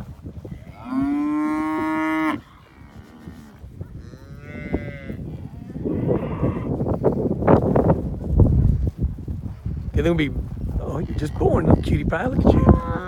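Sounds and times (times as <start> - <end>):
cow mooing loudly: 0.6 - 6.7.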